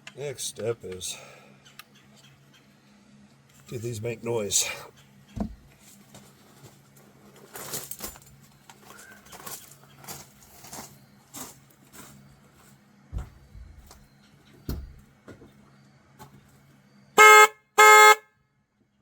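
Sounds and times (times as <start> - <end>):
heavy thump: 5.4 - 5.6, 13.1 - 13.9.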